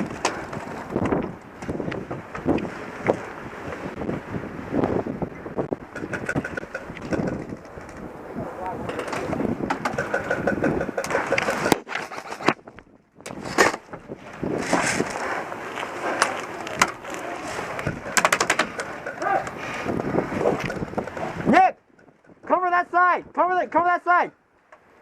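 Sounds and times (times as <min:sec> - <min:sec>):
rustling and clatter of gear: 0:05.9 - 0:08.1, 0:08.9 - 0:21.3.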